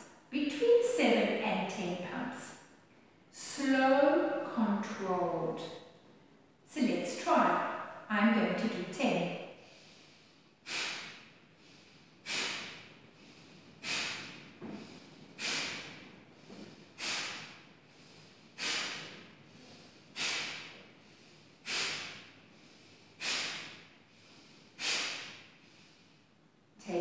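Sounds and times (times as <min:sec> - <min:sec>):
sharp nasal exhalations: 0:09.6 - 0:26.2.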